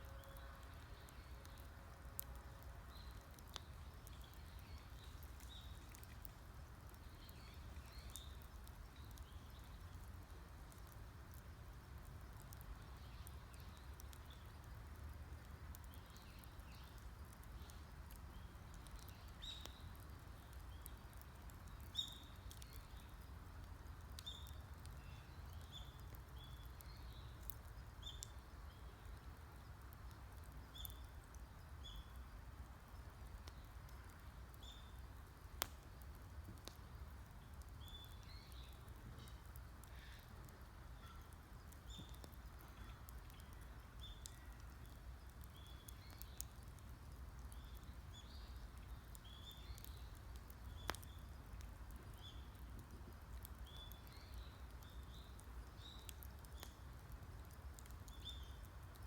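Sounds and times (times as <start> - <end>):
wood fire crackling: 0.0 - 59.0.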